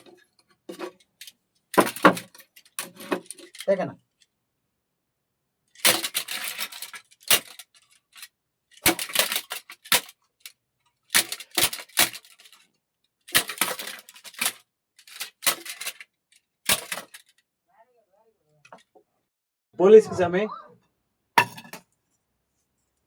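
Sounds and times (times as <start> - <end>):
small hard objects clattering: 0.0 - 4.2, 5.8 - 12.7, 13.3 - 16.1, 16.7 - 17.4.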